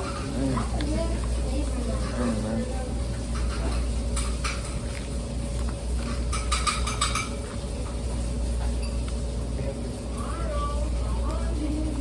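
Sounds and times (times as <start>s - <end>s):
utensil clinking against a dish: 0.0s - 10.3s
steady low hum: 0.0s - 12.0s.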